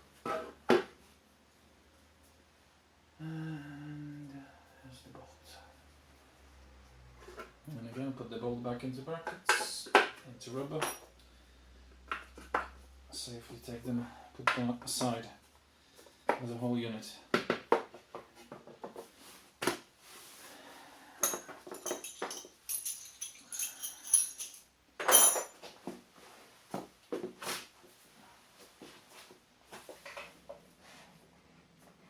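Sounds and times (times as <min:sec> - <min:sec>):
metal parts knocking and clicking: 0:21.2 - 0:25.5
metallic clinking and jingling: 0:21.2 - 0:25.6.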